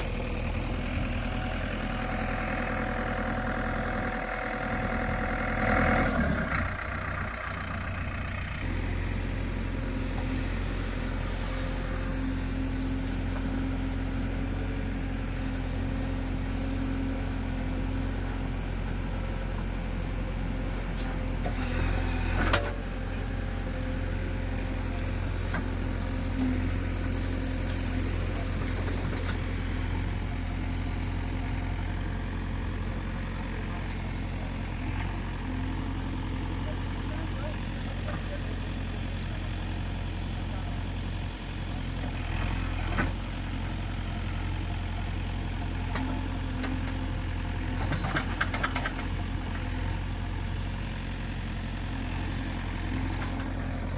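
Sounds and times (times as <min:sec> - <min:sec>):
diesel engine running: 0:00.0 - 0:53.9.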